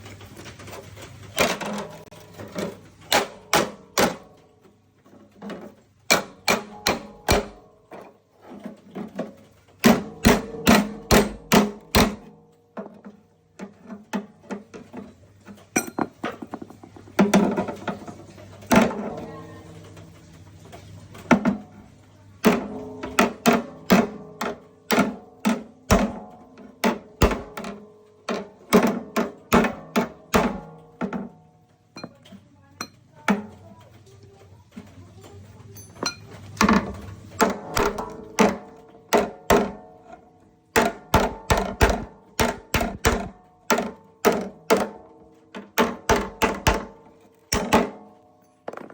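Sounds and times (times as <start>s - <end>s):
hammer striking steel: 6.1s - 7.6s, 10.0s - 12.3s, 15.8s - 16.6s, 40.8s - 43.9s.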